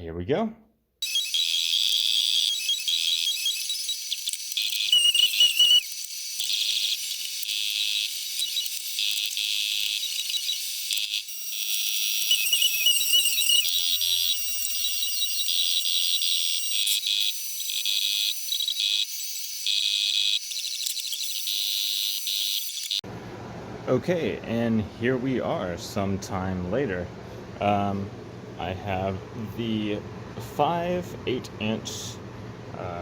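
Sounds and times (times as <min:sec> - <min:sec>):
high chirping and whistling tones: 0:01.0 - 0:05.9, 0:10.0 - 0:17.0.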